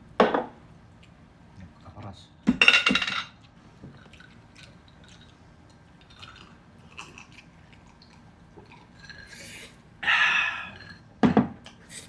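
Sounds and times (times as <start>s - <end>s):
chewing food: 3.4s - 9.6s.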